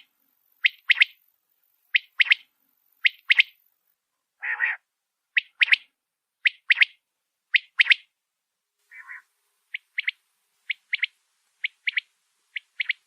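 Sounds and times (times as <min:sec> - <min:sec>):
lower rough bird call: 0:04.4 - 0:04.8, 0:08.9 - 0:09.3
quail calling: 0:04.4 - 0:04.8, 0:08.9 - 0:13.0.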